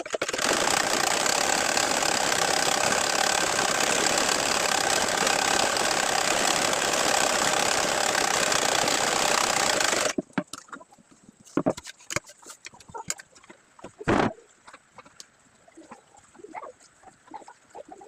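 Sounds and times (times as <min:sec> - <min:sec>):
sewing machine stitching: 0:00.0 - 0:10.2.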